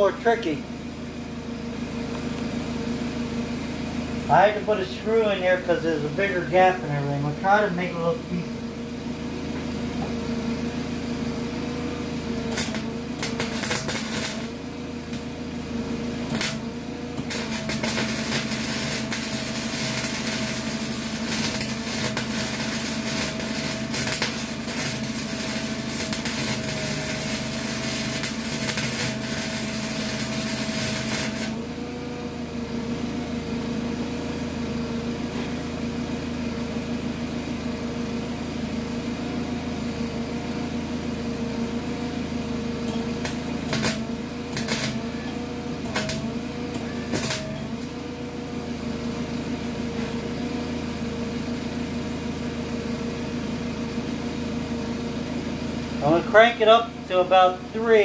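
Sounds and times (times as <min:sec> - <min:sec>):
welder motor hum: 0:00.0 - 0:58.0
welding arc crackle: 0:09.0 - 0:32.1, 0:41.6 - 0:48.2.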